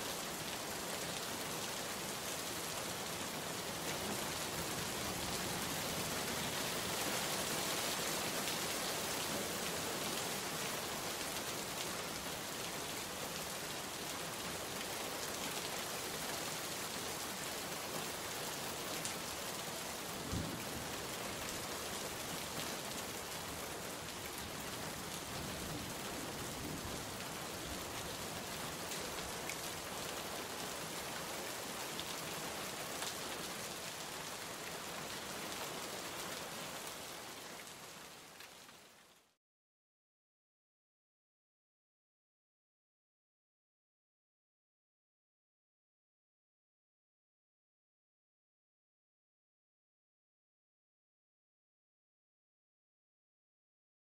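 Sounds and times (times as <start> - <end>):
rain pattering: 0.1 - 39.4.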